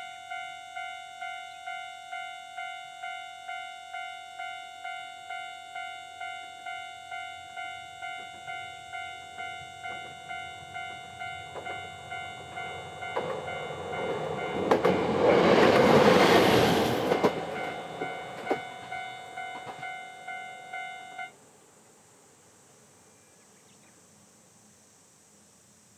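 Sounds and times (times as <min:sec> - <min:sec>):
level crossing bell ringing: 0:00.0 - 0:21.3
diesel railcar passing: 0:00.0 - 0:23.2
wheels clicking over rail joints: 0:09.3 - 0:20.6.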